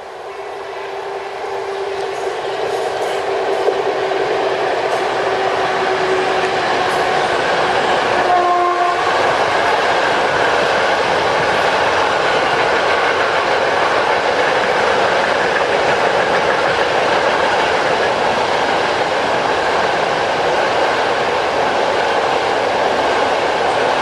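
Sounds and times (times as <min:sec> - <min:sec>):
freight train rumbling past: 0:00.0 - 0:24.0
train horn: 0:04.7 - 0:07.4, 0:08.0 - 0:09.3.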